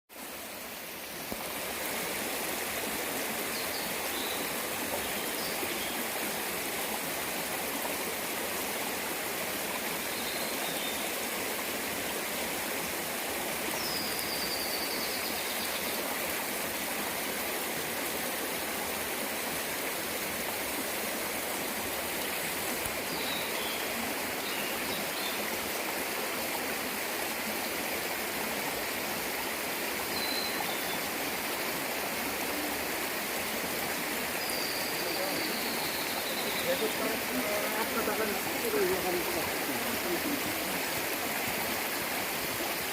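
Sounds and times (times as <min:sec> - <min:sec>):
mountain stream rushing: 0:00.1 - 0:42.9
faint bird calls: 0:34.0 - 0:41.3.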